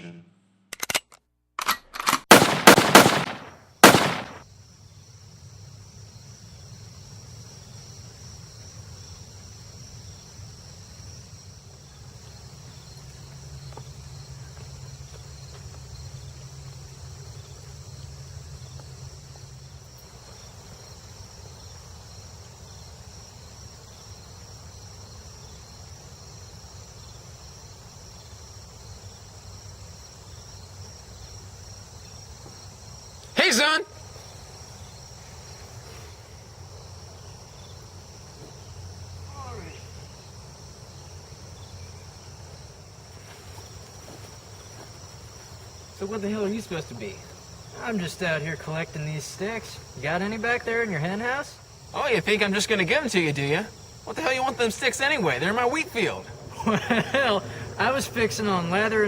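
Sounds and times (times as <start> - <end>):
loud sharp bangs: 2.2 - 4.4
insects chirping: 2.3 - 59.0.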